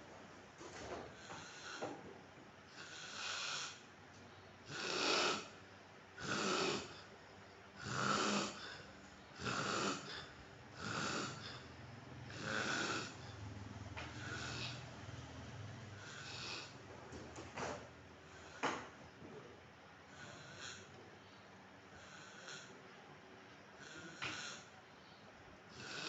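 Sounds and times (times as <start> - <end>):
man snoring: 1.1 - 2.0, 2.7 - 3.8, 4.7 - 5.6, 6.2 - 7.1, 7.8 - 11.7, 12.3 - 13.4, 14.1 - 14.8, 16.0 - 16.8, 20.1 - 20.9, 22.0 - 22.7, 23.8 - 24.7, 25.7 - 26.0.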